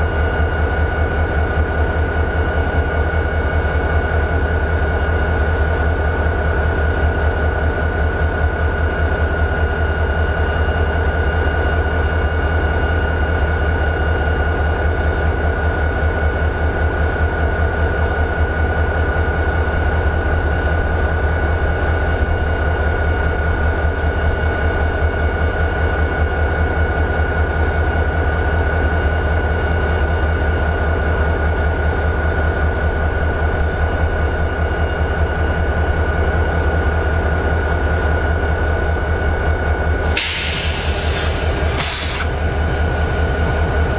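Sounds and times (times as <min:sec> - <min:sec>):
diesel locomotive engine idling: 0:00.0 - 0:43.9.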